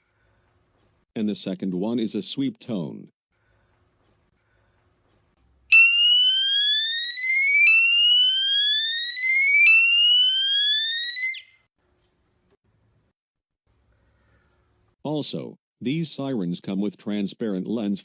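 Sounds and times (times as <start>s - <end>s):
fire alarm sweep tone: 5.7s - 11.7s.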